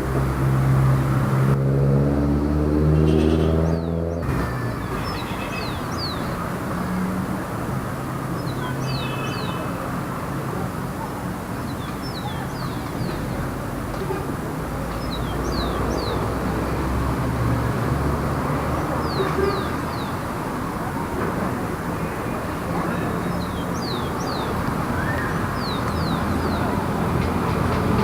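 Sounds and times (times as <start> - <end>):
background traffic noise: 0.0 - 28.0
small birds chirping: 3.6 - 6.5, 8.4 - 9.8, 11.6 - 13.5, 14.7 - 16.6, 18.8 - 20.3, 23.0 - 26.9.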